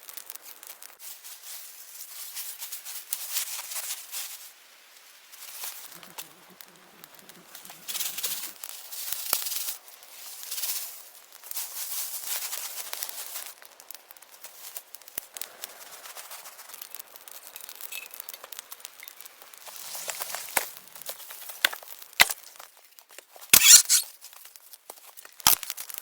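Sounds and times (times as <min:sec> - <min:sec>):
rustling and crinkling: 0:00.4 - 0:13.6, 0:18.3 - 0:25.8
sharp clicks: 0:23.6 - 0:24.0.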